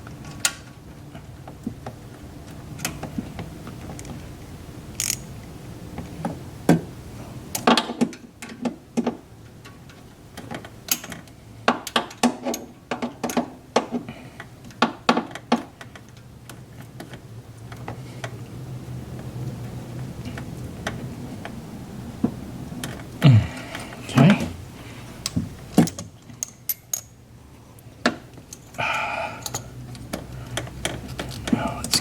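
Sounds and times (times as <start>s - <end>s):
metallic clicks and clanks of tools: 5.0s - 5.3s, 9.6s - 13.5s, 25.2s - 27.2s, 29.4s - 32.0s.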